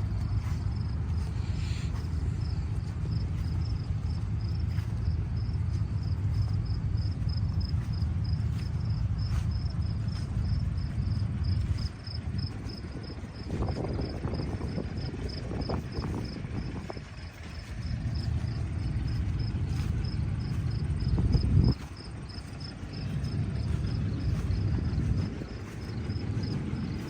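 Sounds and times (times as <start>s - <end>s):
crickets chirping: 0.0s - 27.0s
low rumble: 0.0s - 27.0s.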